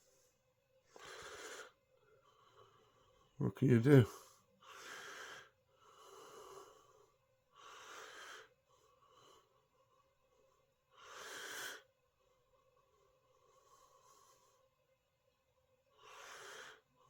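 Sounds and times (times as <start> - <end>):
person breathing softly: 0.0 - 14.7.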